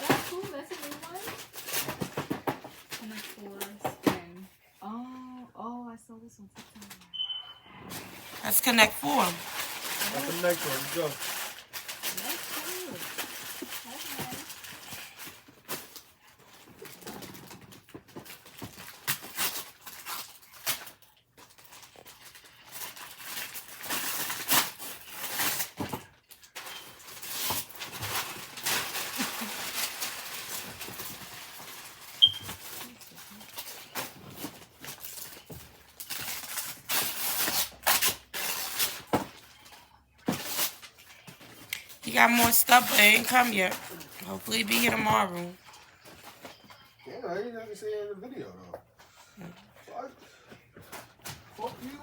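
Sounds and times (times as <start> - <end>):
paper crinkling and tearing: 8.3 - 17.8, 18.4 - 39.1.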